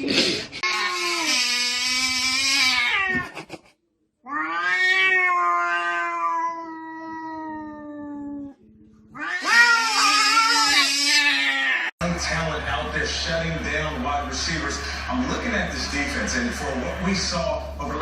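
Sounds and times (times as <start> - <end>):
cat yowling: 0.6 - 3.4, 4.3 - 8.6, 9.2 - 11.9.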